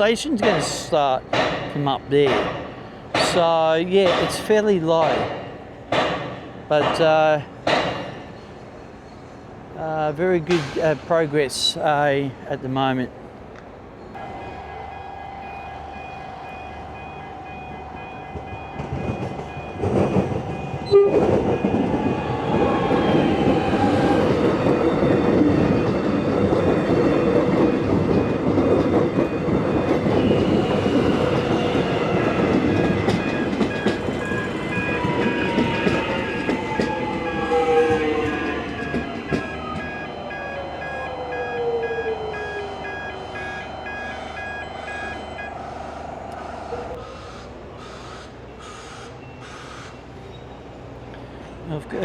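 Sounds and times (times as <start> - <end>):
train rumble and wheel noise: 0.0 - 52.0
sharp knocks: 0.4 - 8.2
train whine: 13.2 - 52.0.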